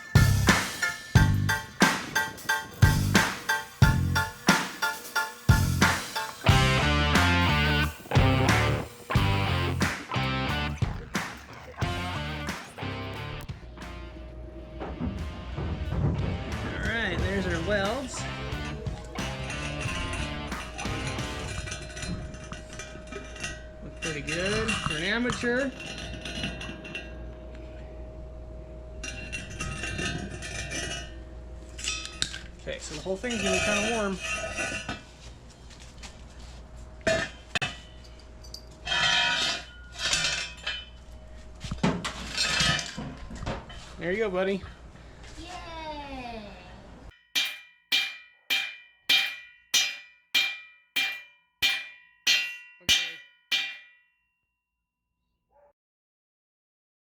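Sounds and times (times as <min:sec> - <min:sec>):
steel clinking: 0:47.2 - 0:54.1.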